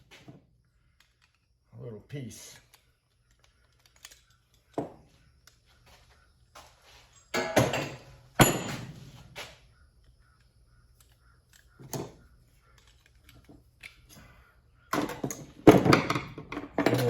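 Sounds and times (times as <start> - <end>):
sharp metal clank: 7.3 - 9.0
metal scrap clinking and clattering: 7.3 - 9.1.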